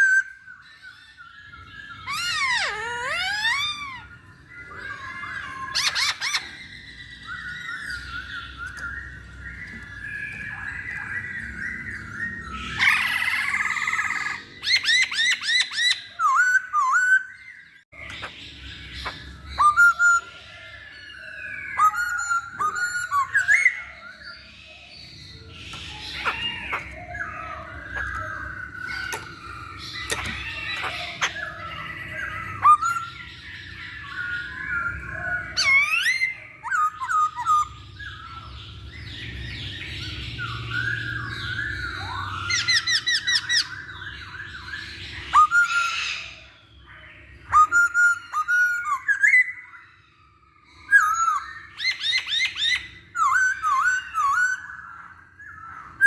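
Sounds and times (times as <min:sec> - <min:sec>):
bird singing whistled phrases: 0:00.0 - 0:17.6, 0:19.0 - 0:24.6, 0:39.7 - 0:46.6, 0:47.4 - 0:49.8, 0:50.8 - 0:56.0.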